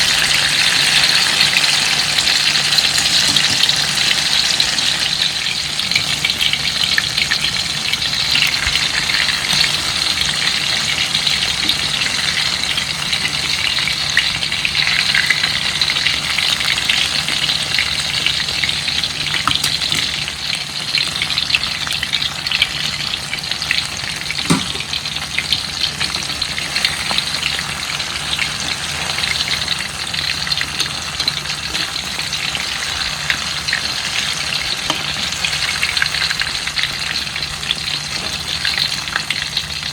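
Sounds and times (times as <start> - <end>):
food sizzling in hot oil: 0.0 - 39.9.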